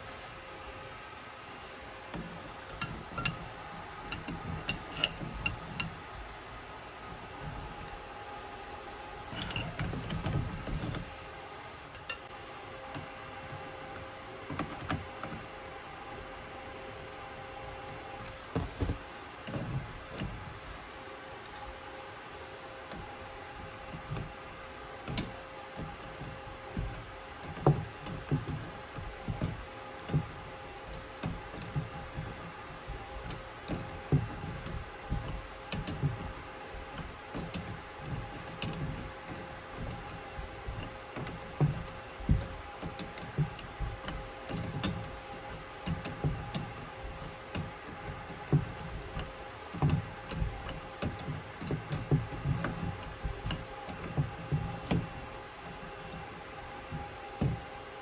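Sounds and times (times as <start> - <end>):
steady two-tone hum: 0.0 - 58.0
hand tools clicking and knocking: 2.7 - 3.5.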